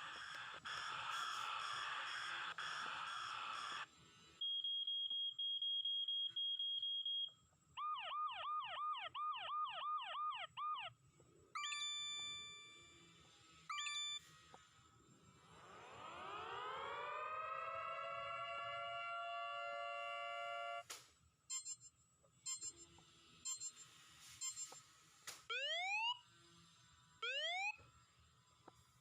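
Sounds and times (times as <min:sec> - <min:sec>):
fast yelping siren: 0:07.8 - 0:11.0, 0:15.6 - 0:20.6, 0:25.5 - 0:26.2, 0:27.2 - 0:27.8
rapid high beeping: 0:21.5 - 0:21.9, 0:22.5 - 0:22.8, 0:23.4 - 0:23.8.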